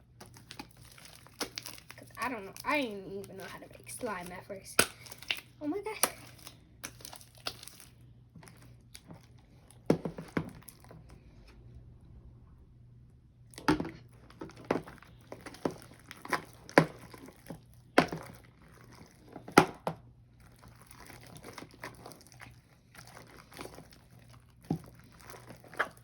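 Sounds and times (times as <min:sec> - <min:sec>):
slime clicking and popping: 0:00.2 - 0:02.7, 0:04.8 - 0:07.9.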